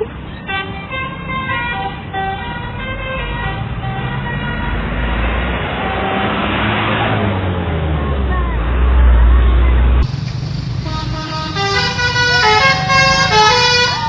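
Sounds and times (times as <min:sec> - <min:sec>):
bus engine and road noise: 0:00.0 - 0:14.0
bus horn playing a tune: 0:00.4 - 0:06.4, 0:10.7 - 0:14.0.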